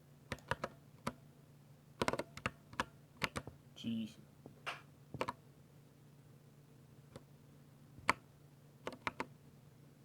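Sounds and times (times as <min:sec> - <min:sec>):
mechanical keyboard keystrokes: 0:00.3 - 0:01.2, 0:02.0 - 0:03.5, 0:05.2 - 0:05.4, 0:08.8 - 0:09.3.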